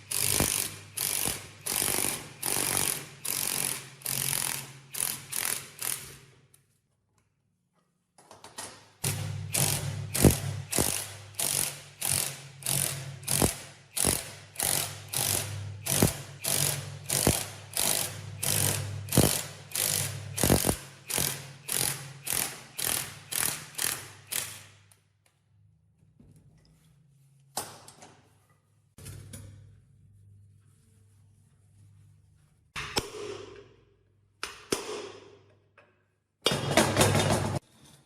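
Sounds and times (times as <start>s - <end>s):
tool rasping strokes: 9.0s - 24.5s.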